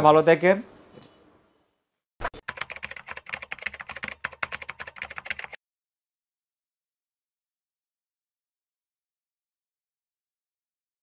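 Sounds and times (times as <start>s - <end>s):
rapid sharp clicks: 2.4s - 5.6s.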